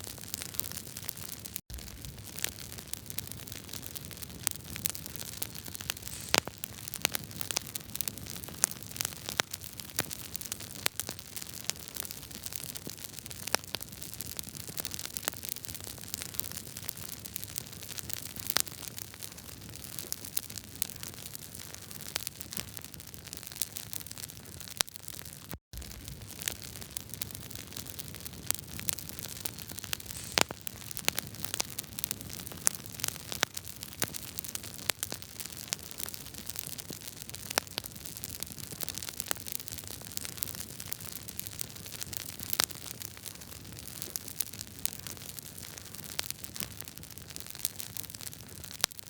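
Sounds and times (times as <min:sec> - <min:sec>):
wood fire crackling: 0:00.1 - 0:13.5, 0:25.8 - 0:48.9.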